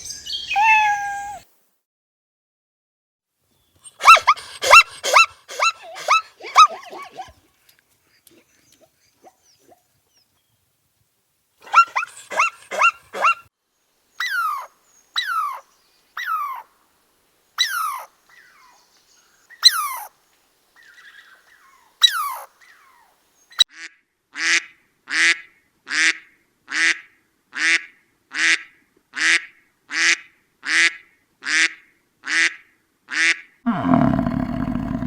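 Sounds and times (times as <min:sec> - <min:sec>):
dog yelping: 0:00.5 - 0:01.4.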